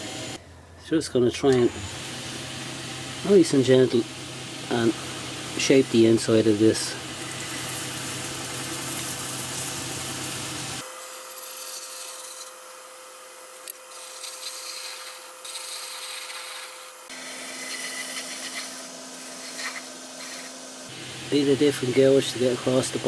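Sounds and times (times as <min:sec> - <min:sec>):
wood lathe humming: 0:02.0 - 0:21.4
gouge scraping hiss: 0:04.4 - 0:12.8, 0:13.4 - 0:21.0.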